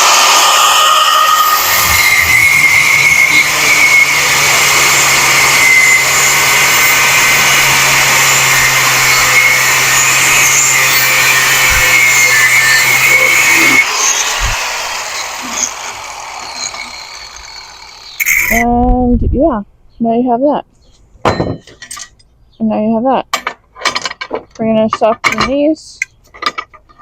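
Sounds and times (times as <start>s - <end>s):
angle grinder cutting metal: 0.0s - 18.7s.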